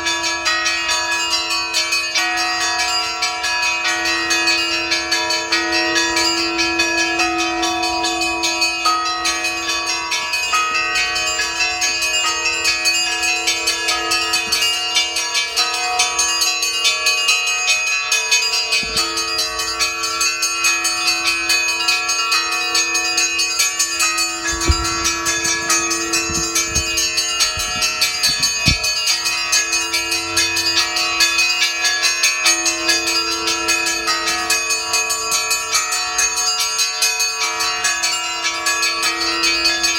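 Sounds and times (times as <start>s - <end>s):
small church bells pealing: 0.0s - 39.9s
deep bells ringing: 2.2s - 34.1s
low thumps: 24.4s - 29.0s.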